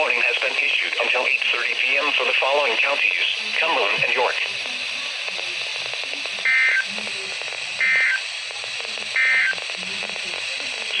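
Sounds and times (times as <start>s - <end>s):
radio hiss: 0.0s - 11.0s
digital data tone bursts: 6.3s - 7.0s, 7.7s - 8.3s, 9.1s - 9.6s.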